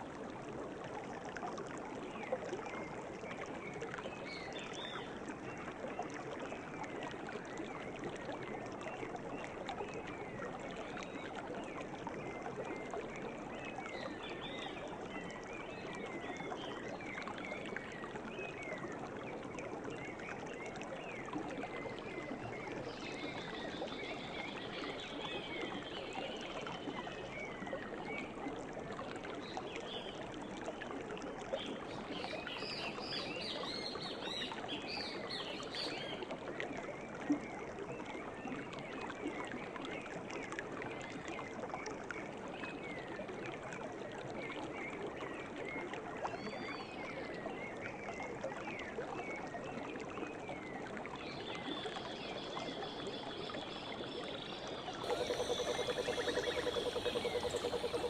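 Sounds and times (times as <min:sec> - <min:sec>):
river water flowing: 0:50.9 - 0:58.0
birds chirping and singing: 0:55.1 - 0:58.0.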